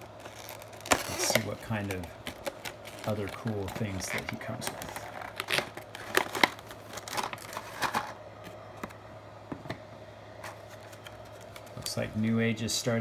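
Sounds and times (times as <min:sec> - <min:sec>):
plastic parts clicking and rustling: 0:00.2 - 0:08.2.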